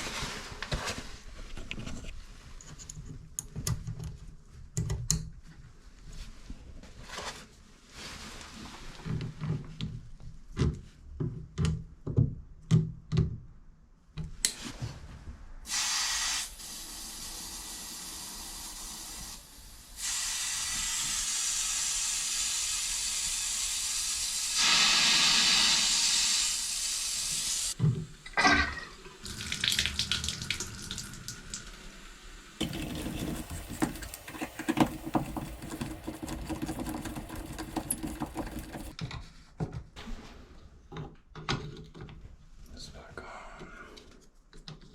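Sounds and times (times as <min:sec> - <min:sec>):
shower water running: 0:15.7 - 0:27.8, 0:28.6 - 0:39.0
parts clicking and knocking: 0:32.6 - 0:39.9.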